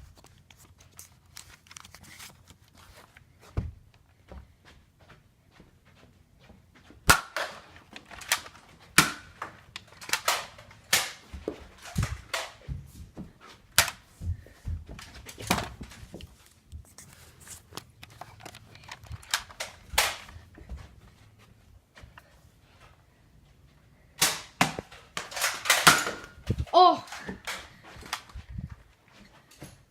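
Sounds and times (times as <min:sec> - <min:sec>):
toy blasters cocking and firing: 0:24.2 - 0:26.3.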